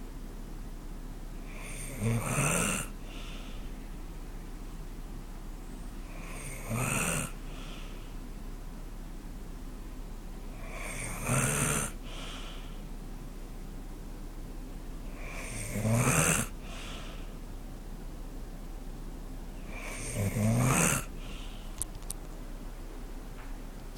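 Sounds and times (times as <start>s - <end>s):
loud snores: 1.5s - 3.0s, 6.1s - 7.4s, 10.6s - 12.4s, 15.1s - 17.1s, 19.7s - 21.5s
soft breath: 3.0s - 3.9s, 7.3s - 8.2s, 11.9s - 12.9s, 16.6s - 17.4s, 21.0s - 22.0s.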